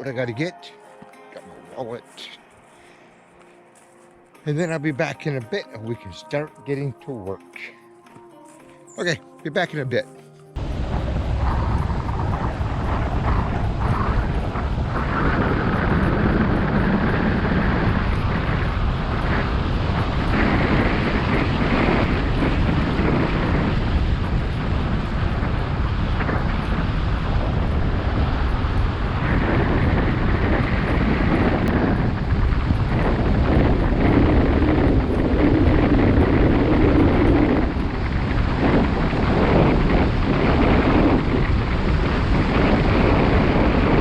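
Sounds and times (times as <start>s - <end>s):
vehicle engine: 10.6s - 39.2s
road noise: 10.6s - 44.0s
wind buffeting microphone: 10.6s - 44.0s.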